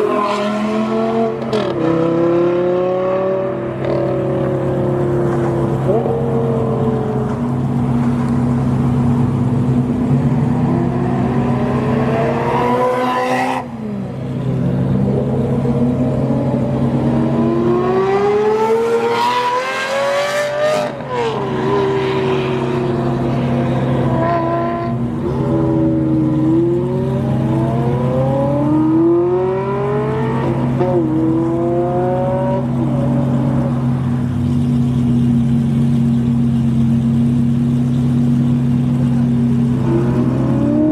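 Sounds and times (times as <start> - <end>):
car engines revving: 0.0 - 40.9
engine idling: 33.6 - 39.8.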